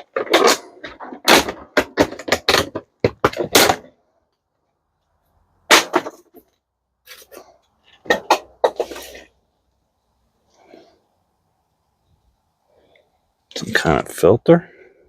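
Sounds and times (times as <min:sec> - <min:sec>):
plastic parts clicking and clattering: 0:00.0 - 0:03.9.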